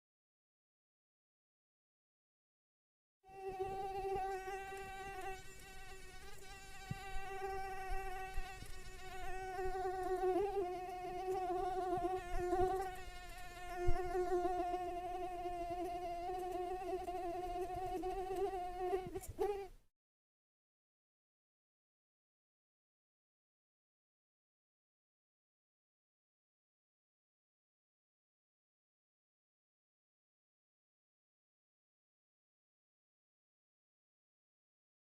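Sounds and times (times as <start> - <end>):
mosquito wings whining: 3.3 - 19.7.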